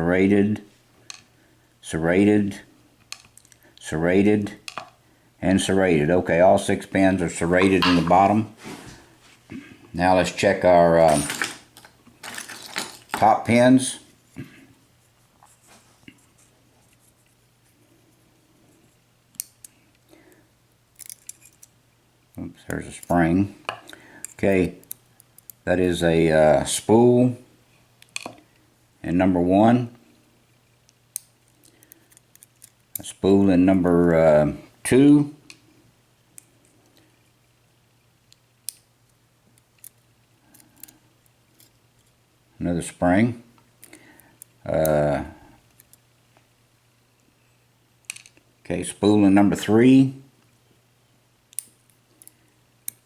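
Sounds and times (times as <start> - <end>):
small metal lock parts clicking: 21.0 - 21.7, 31.1 - 33.0
small metallic clicks: 21.0 - 21.7, 51.5 - 53.0.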